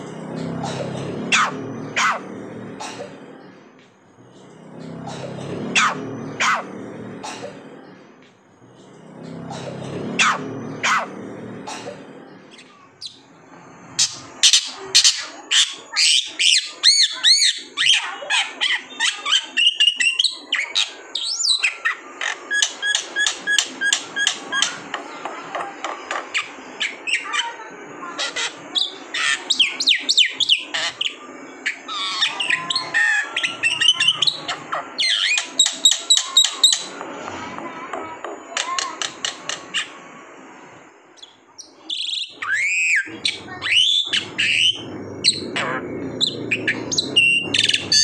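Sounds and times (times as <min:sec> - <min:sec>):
bird singing chirps and whistles: 0:18.7 - 0:24.6, 0:31.9 - 0:37.0, 0:41.2 - 0:48.0.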